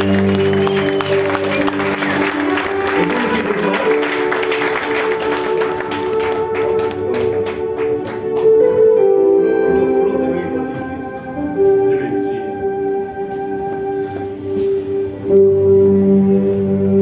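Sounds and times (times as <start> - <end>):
people clapping: 0.0 - 8.8
church keyboard music slow chords: 0.0 - 17.0.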